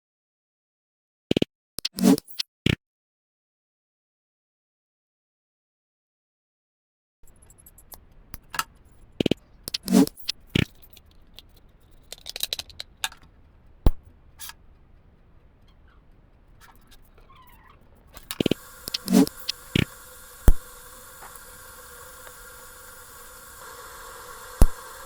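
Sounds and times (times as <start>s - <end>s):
small hard parts clicking: 7.3s - 25.0s
steady hiss: 7.3s - 25.0s.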